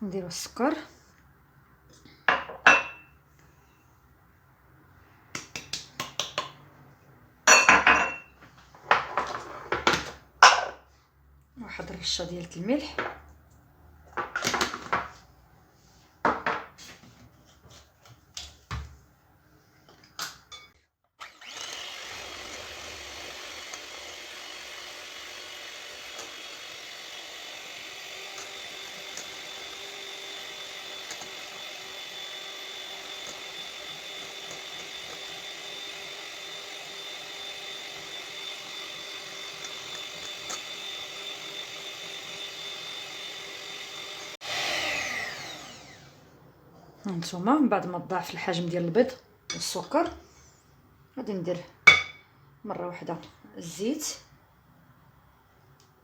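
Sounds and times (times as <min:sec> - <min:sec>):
electric mixer whipping: 0:21.2 - 0:46.3.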